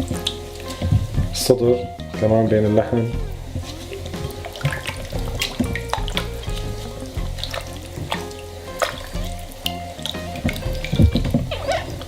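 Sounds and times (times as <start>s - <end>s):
background music: 0.0s - 12.0s
wet squelching of marinade: 2.6s - 12.0s.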